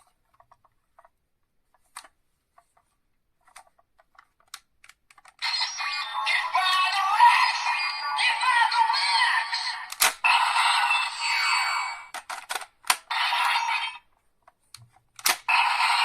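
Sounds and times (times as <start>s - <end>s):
synthesized singing voice: 5.4s - 12.1s
tinny toy speaker music: 5.4s - 12.1s, 13.1s - 14.0s, 15.5s - 16.0s
plastic toy clicks: 12.1s - 13.1s, 14.7s - 15.5s.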